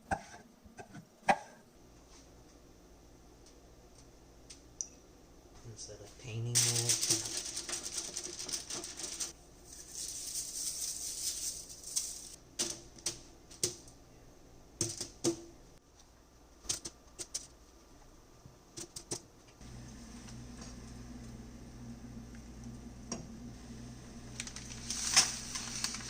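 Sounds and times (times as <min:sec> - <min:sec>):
kitchen items clicking and knocking: 0:06.6 - 0:13.9
low steady hum: 0:19.4 - 0:26.0.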